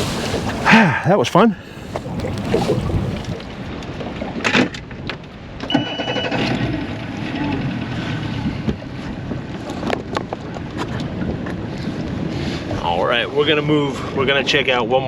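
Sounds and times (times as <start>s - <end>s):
wind buffeting microphone: 0.0s - 4.3s
water noise around boat: 0.0s - 15.0s
short high beep: 5.7s - 6.4s.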